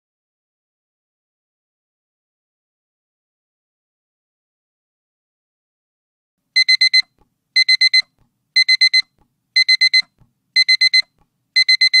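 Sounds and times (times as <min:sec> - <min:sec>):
timer alarm beeping: 0:06.6 - 0:12.0.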